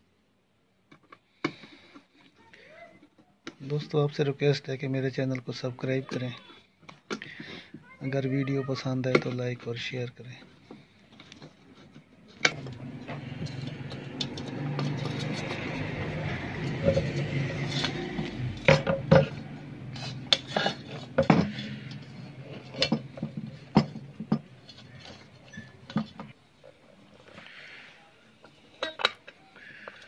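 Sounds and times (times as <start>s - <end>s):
metal parts and tools clinking: 11.1s - 26.4s, 28.5s - 29.4s.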